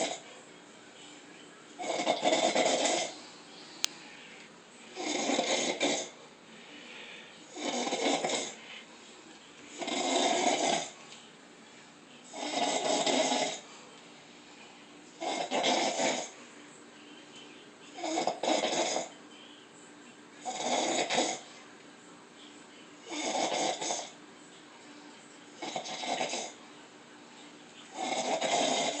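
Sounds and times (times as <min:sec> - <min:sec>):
woman snoring: 0:00.0 - 0:00.2, 0:01.8 - 0:03.2, 0:05.0 - 0:06.2, 0:07.5 - 0:08.7, 0:09.8 - 0:11.0, 0:12.3 - 0:13.7, 0:15.2 - 0:16.4, 0:18.0 - 0:19.1, 0:20.4 - 0:21.5, 0:23.1 - 0:24.2, 0:25.6 - 0:26.6, 0:27.9 - 0:29.0
quiet breathing: 0:02.4 - 0:17.6, 0:22.4 - 0:29.0.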